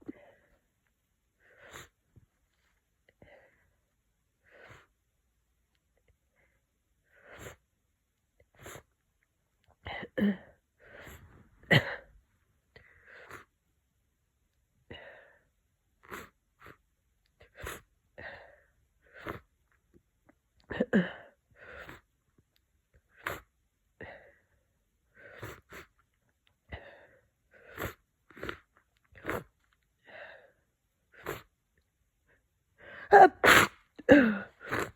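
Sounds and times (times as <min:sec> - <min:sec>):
person sniffing and breathing: 0:01.4 - 0:02.0, 0:07.2 - 0:07.6, 0:08.5 - 0:08.9, 0:10.8 - 0:12.0, 0:12.8 - 0:13.5, 0:17.5 - 0:19.5, 0:21.6 - 0:22.1, 0:25.2 - 0:26.0, 0:26.8 - 0:29.5, 0:31.1 - 0:31.5, 0:32.8 - 0:34.9
congested sneezes: 0:11.0 - 0:12.1, 0:33.1 - 0:34.9.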